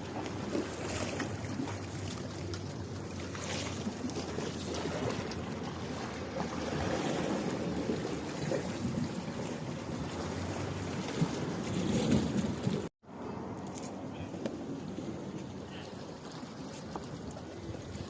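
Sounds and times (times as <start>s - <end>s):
sea water lapping: 0.0s - 18.0s
wind on microphone: 3.6s - 12.9s, 14.2s - 18.0s.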